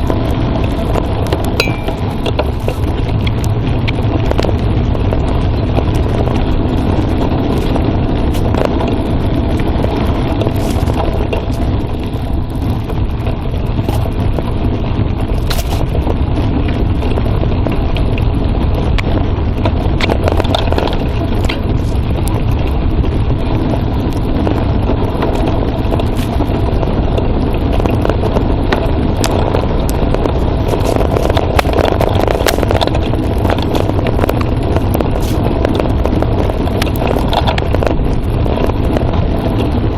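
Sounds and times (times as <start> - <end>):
tyres crunching over dirt: 0.0 - 14.5, 18.8 - 39.9
bike rattling: 0.0 - 39.9
wind rumble on microphone: 0.0 - 39.9.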